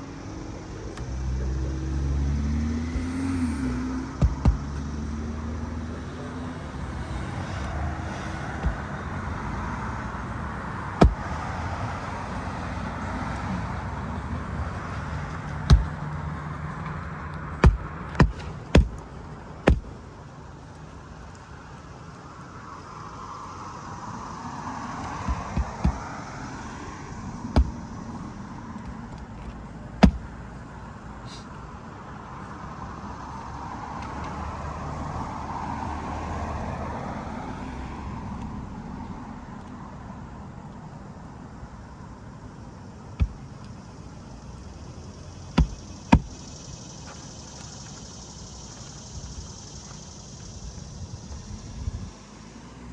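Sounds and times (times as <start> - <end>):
traffic noise: 0.0 - 52.9
hammer driving roofing nails: 4.1 - 5.0, 7.0 - 9.3, 10.9 - 13.5, 15.2 - 16.0, 17.6 - 20.1, 25.1 - 26.8, 27.4 - 28.0, 30.0 - 30.3, 45.5 - 46.4.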